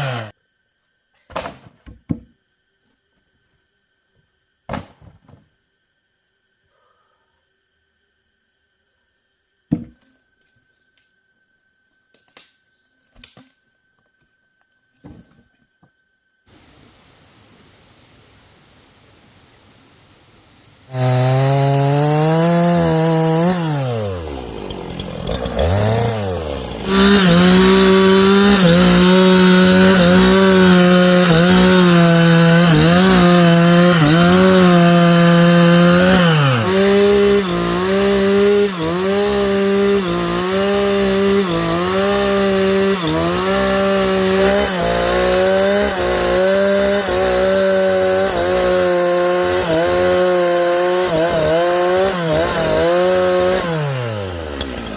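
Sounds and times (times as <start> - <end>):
chainsaw cutting log: 0.0 - 0.3, 20.8 - 54.9.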